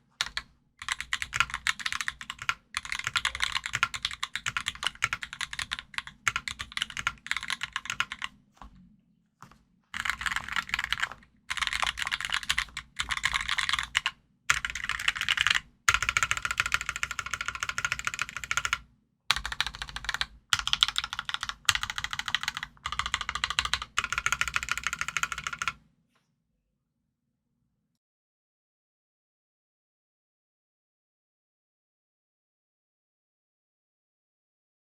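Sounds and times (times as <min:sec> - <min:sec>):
mechanical keyboard typing: 0:00.2 - 0:08.3, 0:10.0 - 0:25.8.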